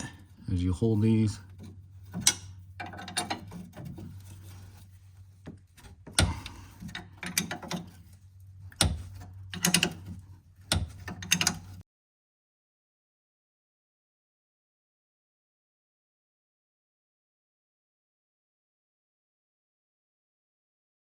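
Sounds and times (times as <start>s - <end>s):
low steady hum: 0.0s - 11.8s.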